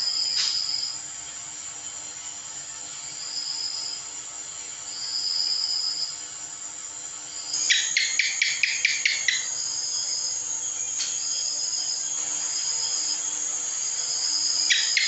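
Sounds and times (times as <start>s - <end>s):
high-pitched ringing with trills: 0.0s - 15.0s
gecko chirping: 7.6s - 9.8s, 14.6s - 15.0s.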